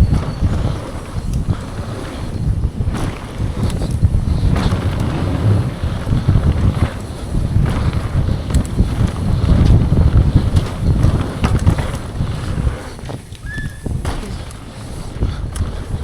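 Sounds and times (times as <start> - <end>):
bike rattling over rough trail: 0.0 - 16.0
wind buffeting microphone: 0.0 - 16.0
brief high squeak: 13.4 - 14.0.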